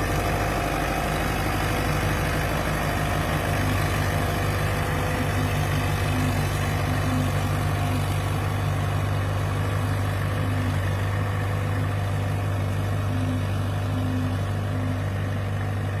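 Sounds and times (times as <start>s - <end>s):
tractor engine running: 0.0s - 16.0s.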